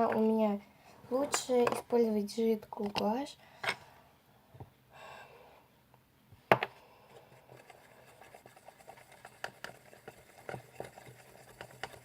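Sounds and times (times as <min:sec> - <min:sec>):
paint stirred in a jar: 0:07.0 - 0:12.0.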